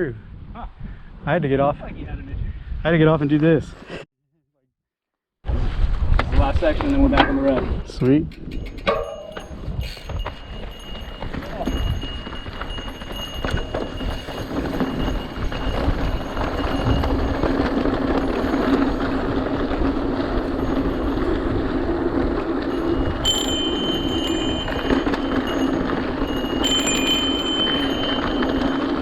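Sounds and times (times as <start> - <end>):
bicycle tyre and wind rush: 0.0 - 3.9, 5.5 - 29.0
brake squeals: 8.3 - 29.0.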